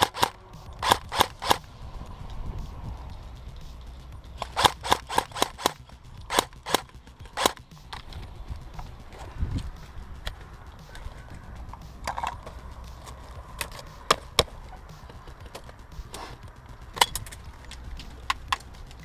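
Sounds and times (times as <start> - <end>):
airsoft gun shots: 0.0 - 1.7, 4.4 - 7.6.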